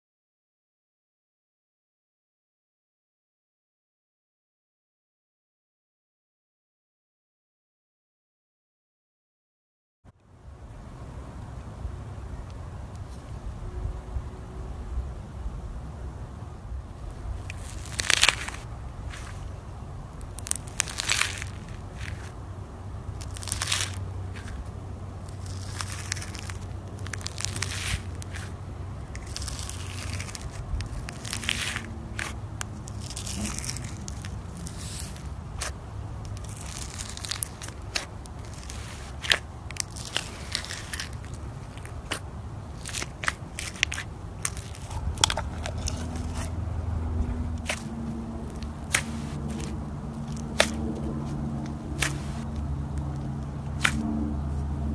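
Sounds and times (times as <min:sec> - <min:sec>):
foam bead slime crackling: 0:17.4 - 0:19.5, 0:20.2 - 0:22.4, 0:23.1 - 0:46.5, 0:47.6 - 0:52.5, 0:53.8 - 0:54.0.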